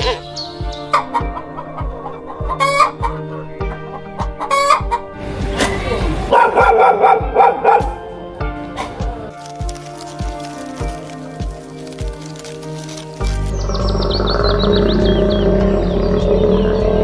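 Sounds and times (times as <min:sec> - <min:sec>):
chickens clucking: 0:00.0 - 0:05.1
background music with steady beat: 0:00.0 - 0:17.0.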